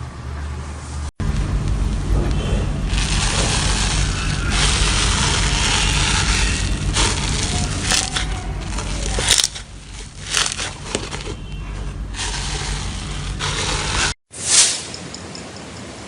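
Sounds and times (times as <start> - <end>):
slime squishing and crackling: 2.3 - 14.2.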